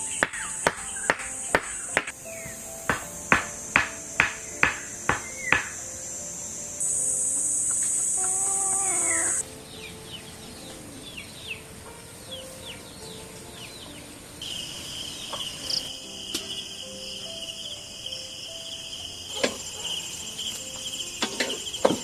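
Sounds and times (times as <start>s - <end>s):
cricket-like trill: 0.0s - 9.4s, 14.4s - 22.0s
high insect buzz: 0.0s - 10.0s, 14.4s - 22.0s
chicken calling: 7.7s - 9.4s.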